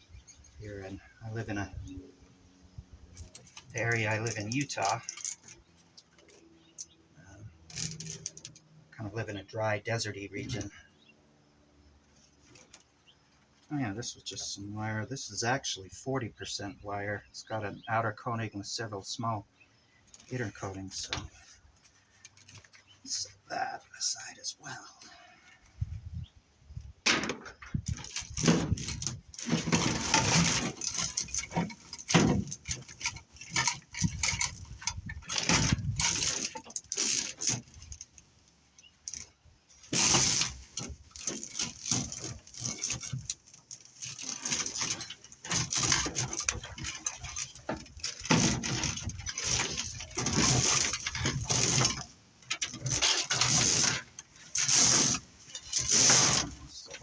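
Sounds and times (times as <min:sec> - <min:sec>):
metal wire scraping and clinking: 0:03.0 - 0:08.7, 0:12.1 - 0:13.4, 0:20.0 - 0:23.3, 0:27.3 - 0:57.0.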